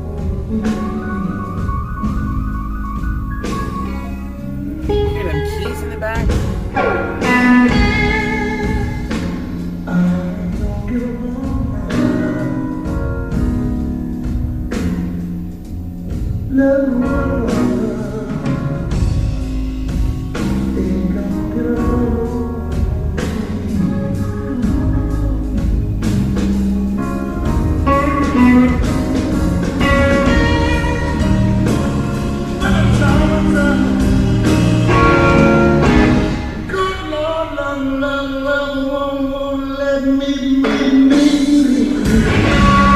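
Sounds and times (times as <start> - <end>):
electric guitar: 0.0 - 37.5, 40.6 - 42.9
bass and drums: 0.0 - 38.9, 39.5 - 42.9
person singing: 3.9 - 9.2, 29.6 - 42.9.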